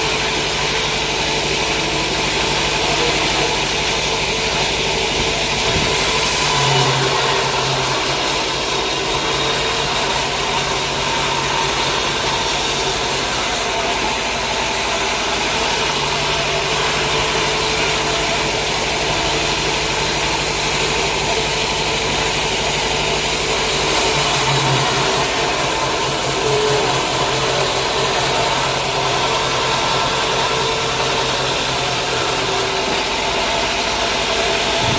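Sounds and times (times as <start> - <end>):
sawmill machinery running: 0.0 - 34.9
low motor hum: 32.7 - 34.9.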